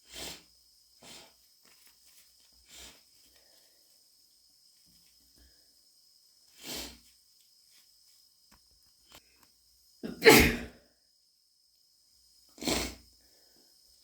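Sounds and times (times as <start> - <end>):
woman sneezing: 10.0 - 10.8
woman sniffling: 10.0 - 10.8.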